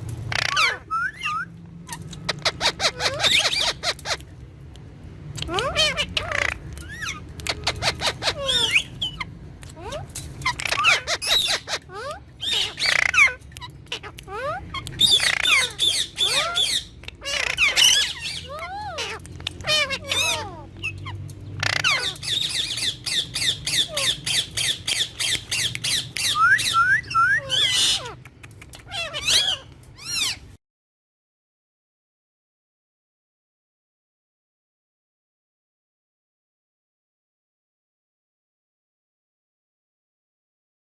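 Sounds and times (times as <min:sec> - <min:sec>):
parakeet chattering and squawking: 0:00.2 - 0:04.4, 0:05.3 - 0:30.6.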